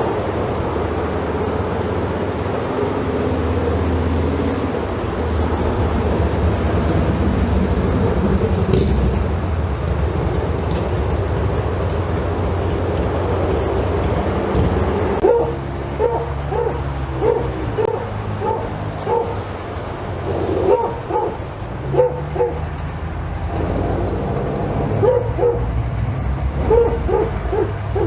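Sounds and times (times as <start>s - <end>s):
steady low hum: 0.0s - 28.0s
dog barking: 15.2s - 19.5s, 20.6s - 22.7s, 24.9s - 25.8s, 26.6s - 28.0s.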